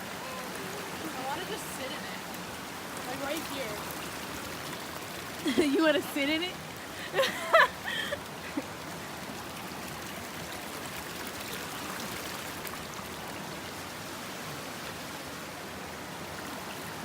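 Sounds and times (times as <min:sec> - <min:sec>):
stream water running: 0:00.0 - 0:17.0.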